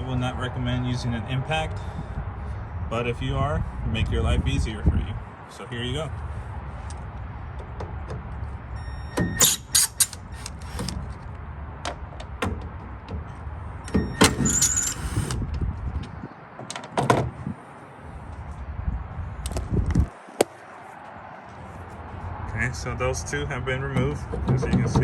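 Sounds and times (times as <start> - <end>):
impact driver rattling: 9.4 - 11.1, 14.2 - 15.4.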